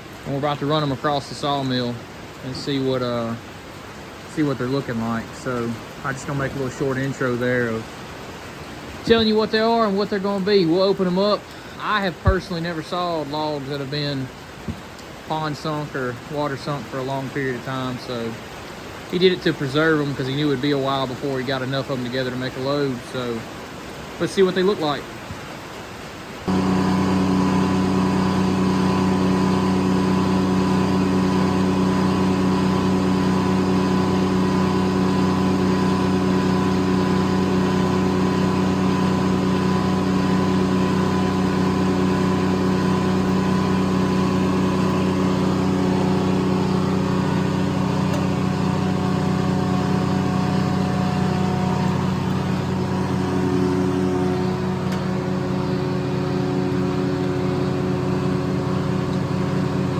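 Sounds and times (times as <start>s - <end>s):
circle sawmill running: 26.5s - 59.9s.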